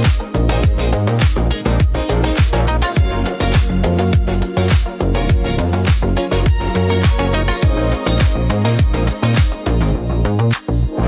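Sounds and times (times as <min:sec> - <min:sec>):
dance music with kick drum: 0:00.0 - 0:09.7.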